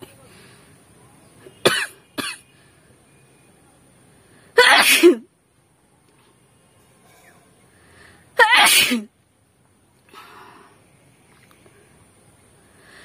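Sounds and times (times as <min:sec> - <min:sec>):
woman sneezing: 0:04.6 - 0:05.2, 0:08.4 - 0:09.1.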